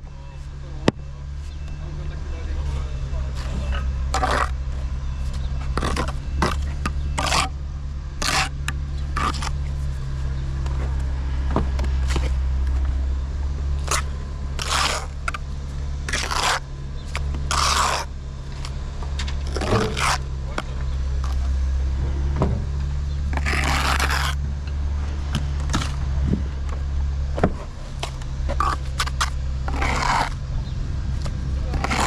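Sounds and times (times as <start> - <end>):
steady low hum: 0.0 - 32.0
short scraping strokes: 5.7 - 7.6, 13.8 - 15.4, 17.4 - 18.1, 19.4 - 21.4, 23.3 - 24.4, 28.0 - 30.4, 31.7 - 32.0.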